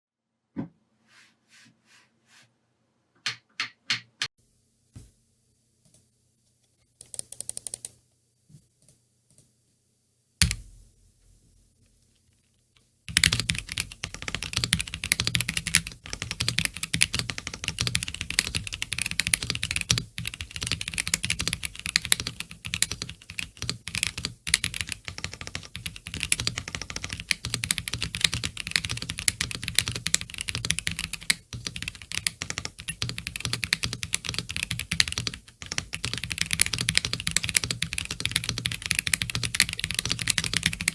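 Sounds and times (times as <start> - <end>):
typing on mechanical keyboard: 7.0 - 8.0, 13.1 - 40.9.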